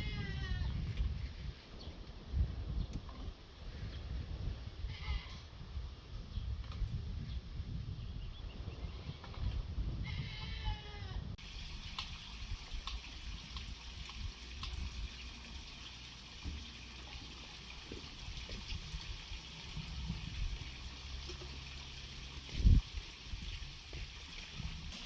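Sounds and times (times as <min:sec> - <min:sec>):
sheep or goat bleating: 0:00.0 - 0:00.7, 0:10.0 - 0:11.2
low outdoor rumble: 0:11.1 - 0:25.0.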